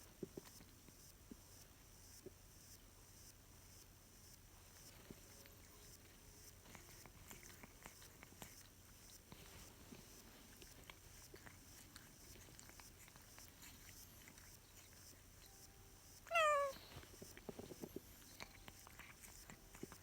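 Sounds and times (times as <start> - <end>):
cat meowing: 16.3 - 16.8.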